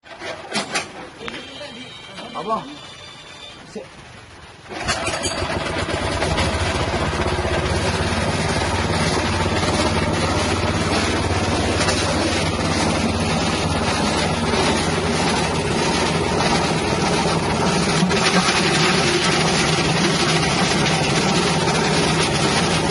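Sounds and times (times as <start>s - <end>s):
small engine running grinding machine: 4.7s - 22.9s.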